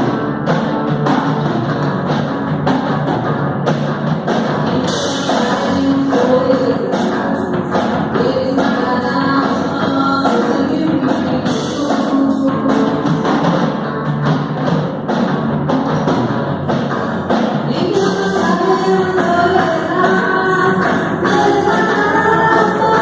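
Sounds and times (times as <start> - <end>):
band playing live: 0.0 - 23.0
drum kit beat: 0.0 - 23.0
people singing: 4.7 - 13.2, 17.7 - 23.0.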